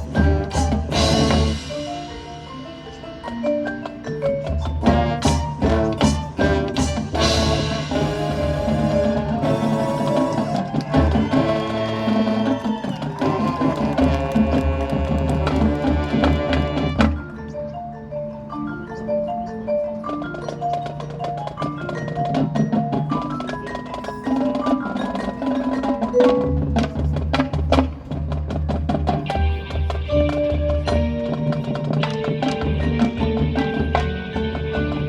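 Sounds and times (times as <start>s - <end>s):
mallet percussion notes: 0.0s - 35.0s
marching band playing: 0.0s - 35.0s.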